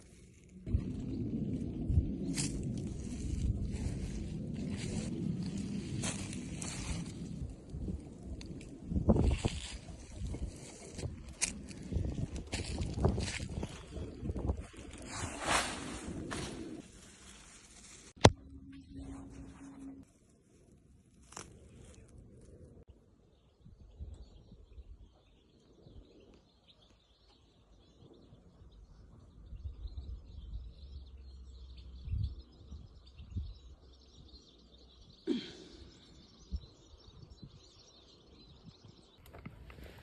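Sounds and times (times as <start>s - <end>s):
low wind rumble: 0.0s - 20.2s.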